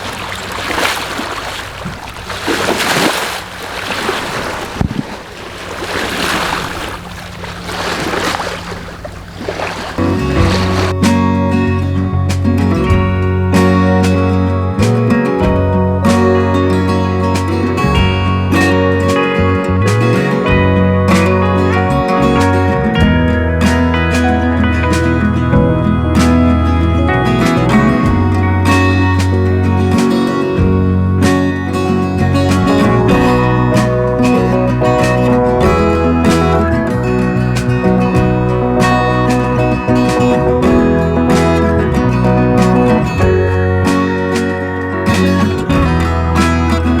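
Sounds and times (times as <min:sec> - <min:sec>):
wind on microphone: 0:00.0 - 0:11.0
water splashing along hull: 0:00.0 - 0:11.3, 0:20.5 - 0:47.0
country acoustic and slide guitar: 0:10.0 - 0:47.0.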